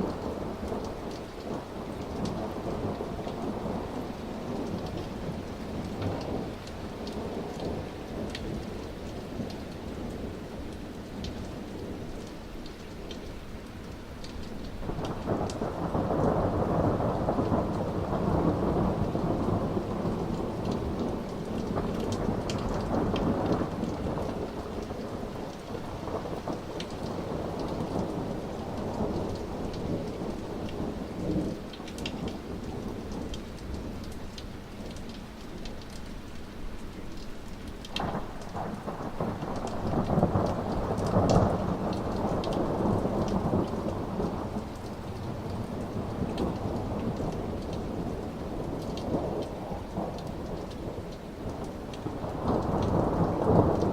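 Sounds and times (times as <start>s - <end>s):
rain patter and drips: 0.0s - 53.9s
rolling thunder: 14.7s - 34.0s, 37.9s - 53.9s.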